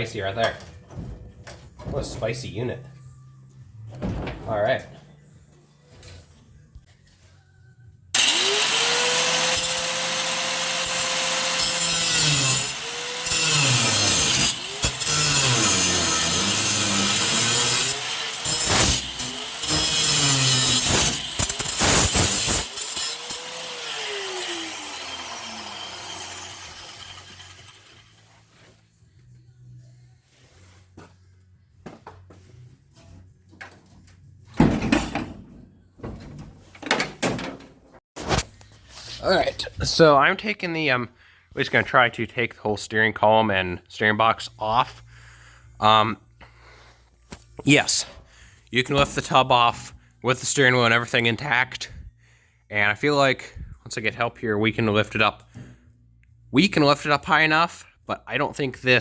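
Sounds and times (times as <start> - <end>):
knocks and clatter of handling: 0.4 - 3.0, 31.8 - 38.0
angle grinder cutting steel: 8.2 - 28.4.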